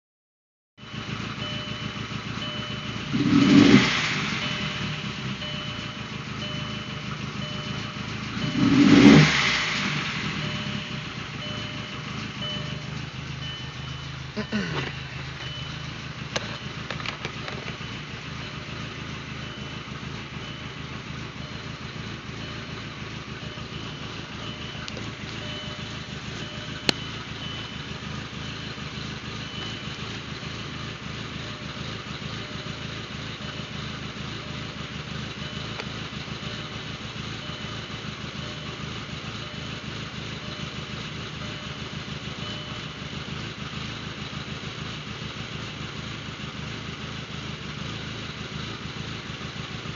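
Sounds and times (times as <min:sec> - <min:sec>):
car engine idling and misfiring: 0:00.8 - 0:49.9.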